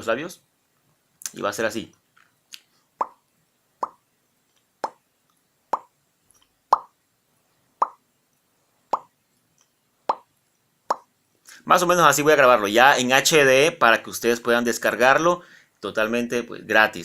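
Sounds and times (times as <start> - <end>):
wet mouth pops: 2.5 - 3.2, 5.7 - 5.9, 6.7 - 6.9.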